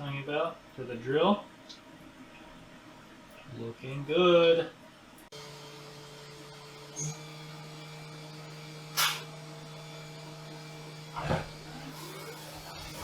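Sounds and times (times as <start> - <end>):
milling machine humming: 5.3 - 13.0.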